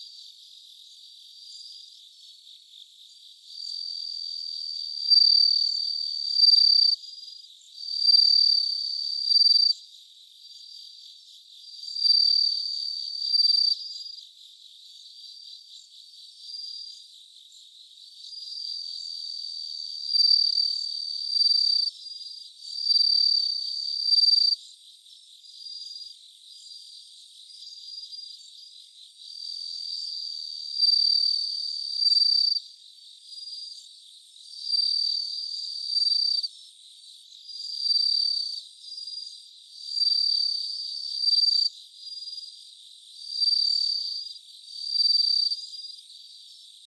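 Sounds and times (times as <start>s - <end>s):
faint insect background: 0.0s - 46.9s.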